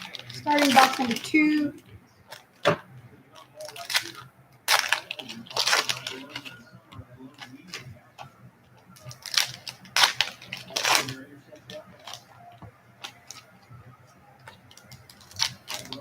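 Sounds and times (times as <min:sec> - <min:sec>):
plastic wrap crinkling and tearing: 0:00.0 - 0:01.7, 0:03.4 - 0:06.6, 0:09.0 - 0:13.5, 0:14.4 - 0:16.0.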